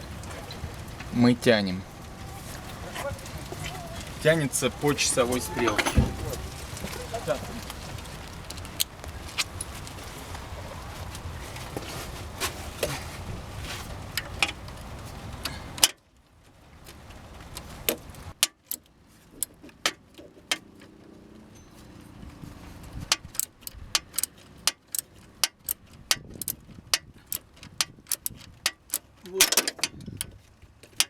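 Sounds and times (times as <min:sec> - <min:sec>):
low background noise: 0:00.0 - 0:31.0
ratchet wrench clicking: 0:23.1 - 0:30.3.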